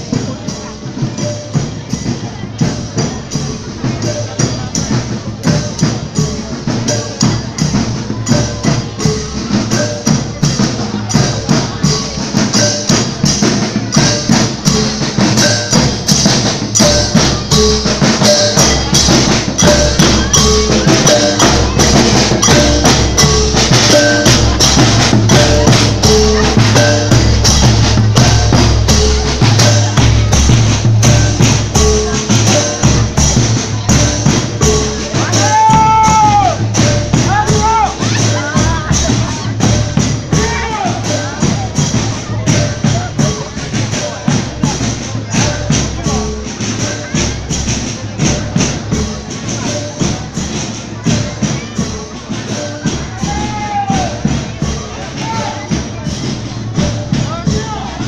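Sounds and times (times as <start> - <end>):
drum beat: 0.0 - 58.0
mallet percussion notes: 0.0 - 58.0
wood-block hits: 0.5 - 57.8.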